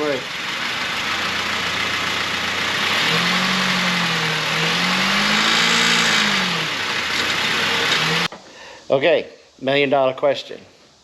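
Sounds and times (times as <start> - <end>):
car engine running: 0.0 - 8.3
loud steady rush: 0.0 - 8.3.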